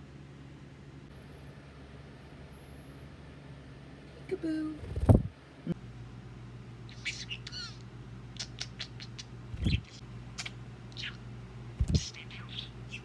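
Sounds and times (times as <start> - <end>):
low thumps: 4.8 - 5.3
budgerigar chirping and chattering: 8.4 - 11.2, 11.8 - 13.0.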